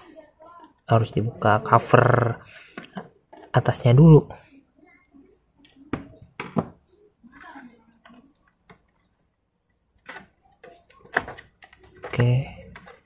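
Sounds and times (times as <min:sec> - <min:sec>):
laptop parts clicking and knocking: 0:08.0 - 0:13.0.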